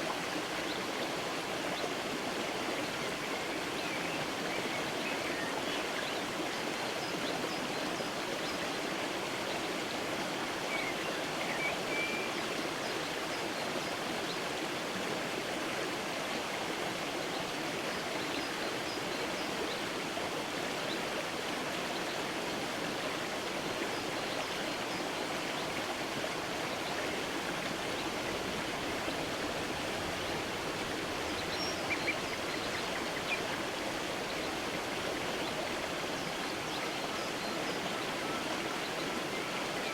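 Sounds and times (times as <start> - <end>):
creek water rushing: 0.0 - 39.9.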